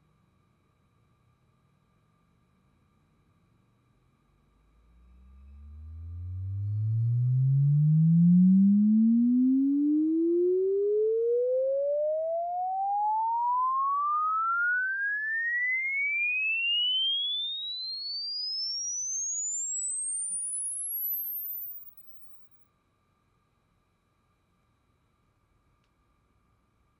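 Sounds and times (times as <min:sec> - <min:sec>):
rising sine sweep tone: 0:04.5 - 0:22.6.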